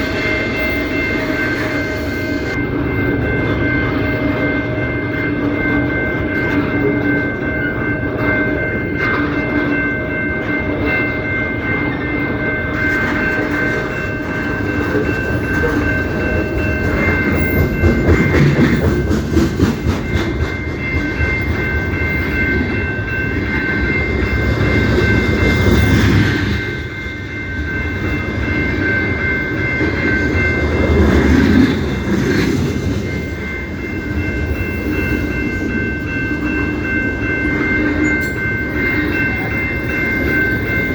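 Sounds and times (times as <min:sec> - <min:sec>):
high ringing tone: 0:00.0 - 0:19.1, 0:20.5 - 0:40.9
train rumbling: 0:00.0 - 0:40.9
wheels clacking over rail joints: 0:12.7 - 0:22.8.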